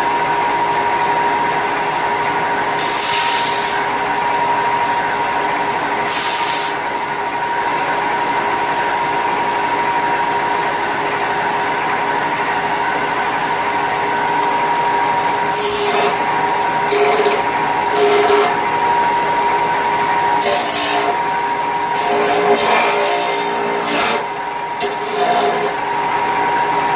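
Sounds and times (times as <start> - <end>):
power tool whining: 13.3 - 26.9
tool rasping into metal: 15.6 - 16.3, 16.9 - 18.6, 20.4 - 21.2, 21.9 - 25.8.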